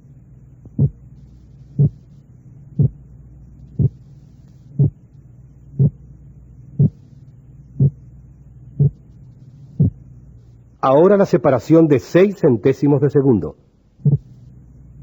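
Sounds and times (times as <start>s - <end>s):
faint low hum: 0.0s - 15.0s
split heart sound thuds: 0.6s - 1.0s, 1.8s - 2.0s, 2.8s - 3.0s, 3.8s - 4.0s, 4.7s - 5.0s, 5.8s - 6.0s, 6.8s - 7.0s, 8.8s - 9.0s, 9.8s - 10.0s, 14.0s - 14.3s.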